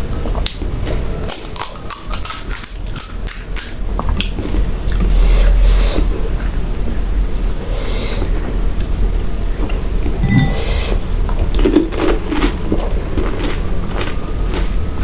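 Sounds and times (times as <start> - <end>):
crisp crunches of eating: 0.1 - 6.7, 11.3 - 15.0
steady low hum: 3.8 - 11.8
dishes clinking: 10.1 - 11.0.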